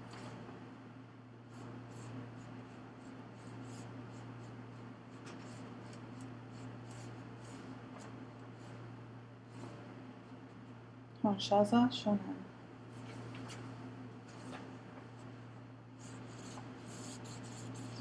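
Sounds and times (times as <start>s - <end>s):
low steady hum: 0.0s - 18.0s
faint scratching and rubbing: 16.0s - 18.0s.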